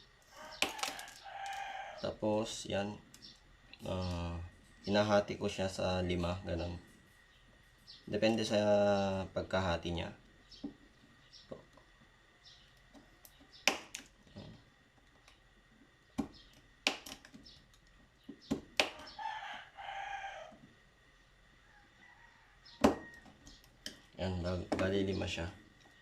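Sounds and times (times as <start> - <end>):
rooster crowing: 0.2 - 2.4, 18.8 - 20.8, 21.6 - 23.6.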